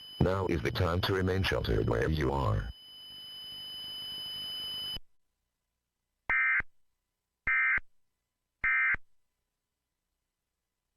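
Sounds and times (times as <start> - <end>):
screeching data bursts: 0.0 - 2.7.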